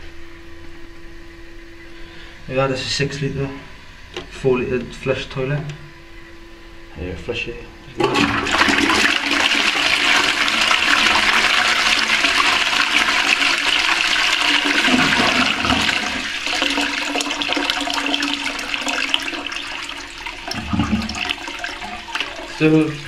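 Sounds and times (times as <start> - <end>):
toilet flushing: 8.0 - 23.0
water draining and refilling: 8.0 - 23.0.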